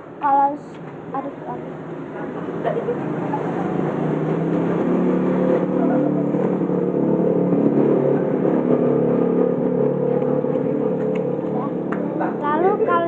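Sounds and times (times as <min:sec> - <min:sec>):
engine running: 0:00.7 - 0:13.0.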